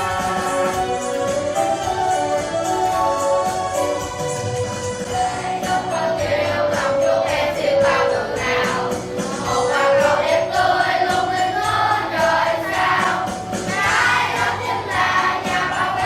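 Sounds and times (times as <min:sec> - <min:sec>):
group singing in unison: 0:00.0 - 0:01.4, 0:05.2 - 0:16.0
instrumental backing music: 0:00.0 - 0:16.0.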